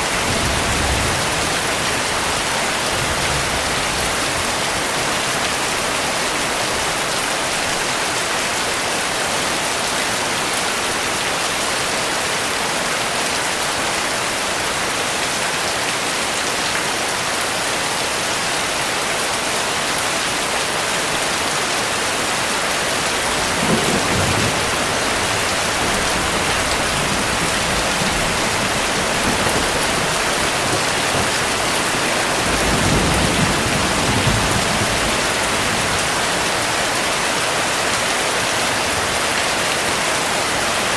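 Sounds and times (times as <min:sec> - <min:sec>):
heavy rain: 0:00.0 - 0:40.9
thunder rumbling: 0:23.4 - 0:35.8.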